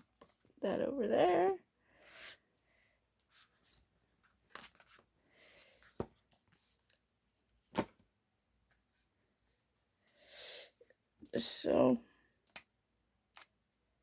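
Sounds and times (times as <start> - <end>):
paper and card rustling: 3.3 - 7.0.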